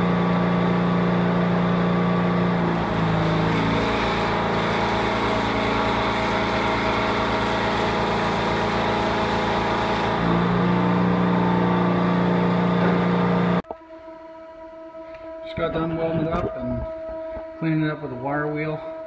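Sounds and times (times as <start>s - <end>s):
wire wheel grinder running: 0.0s - 13.6s.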